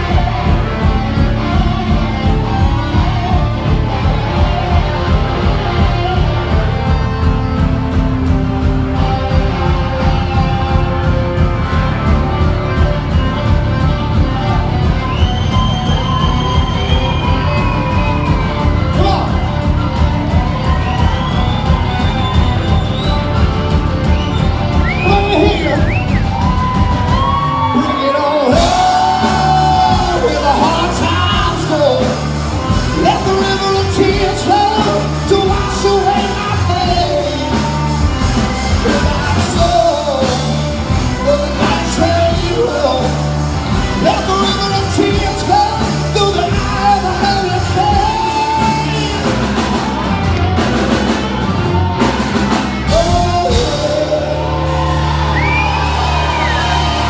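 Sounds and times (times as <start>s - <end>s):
rock band playing live: 0.0s - 57.0s
singer shouting lines: 24.7s - 26.2s, 27.3s - 43.2s, 52.8s - 55.1s.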